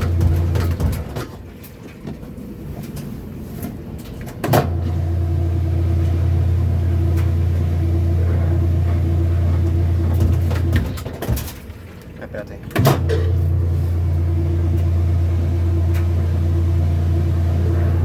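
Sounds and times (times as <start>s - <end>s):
washing machine motor humming: 0.0s - 18.0s.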